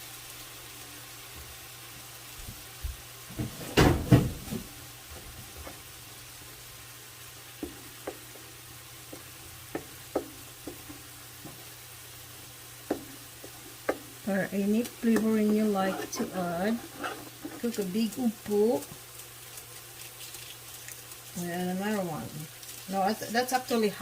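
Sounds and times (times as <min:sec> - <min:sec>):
pot hissing on heat: 0:00.0 - 0:24.0
light utensil taps: 0:07.6 - 0:08.2, 0:12.9 - 0:14.1.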